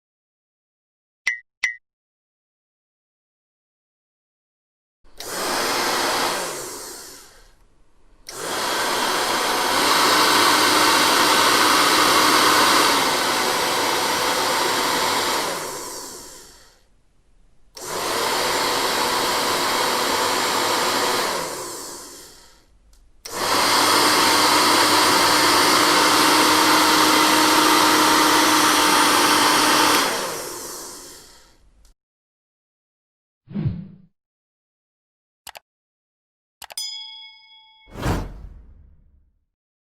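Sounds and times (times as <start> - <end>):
hairdryer blowing whir: 5.2 - 7.5, 8.3 - 16.6, 17.8 - 22.4, 23.3 - 31.4.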